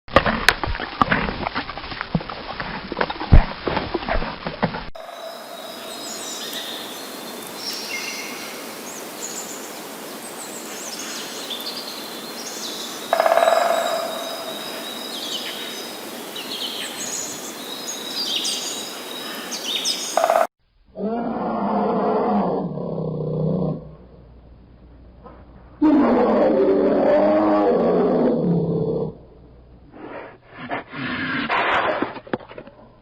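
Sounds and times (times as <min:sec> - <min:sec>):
outdoor hiss: 0:03.3 - 0:20.4
birds chirping and singing: 0:05.0 - 0:20.5
low animal call: 0:13.1 - 0:15.1, 0:20.2 - 0:24.4.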